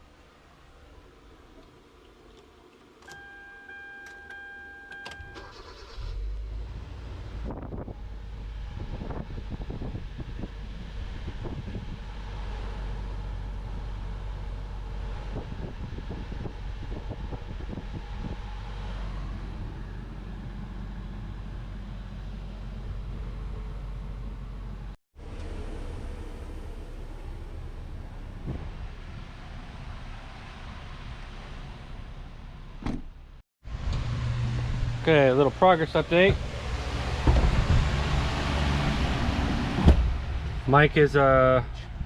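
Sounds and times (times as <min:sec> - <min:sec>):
car engine starting and idling: 0:00.0 - 0:42.0
car warning chime: 0:03.1 - 0:05.6.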